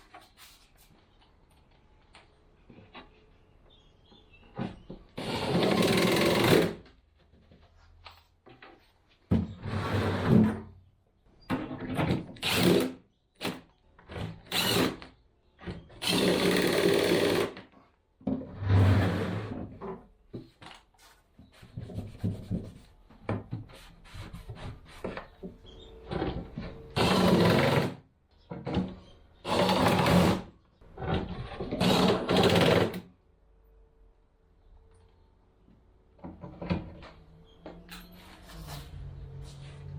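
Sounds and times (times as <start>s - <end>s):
power drill running in bursts: 5.2s - 6.8s, 12.4s - 12.9s, 14.5s - 15.0s, 16.0s - 17.5s, 27.0s - 28.0s.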